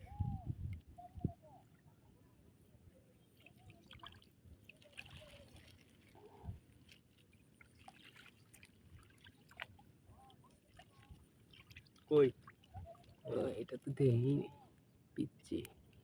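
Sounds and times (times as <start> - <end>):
water trickling and splashing: 3.2 - 16.0.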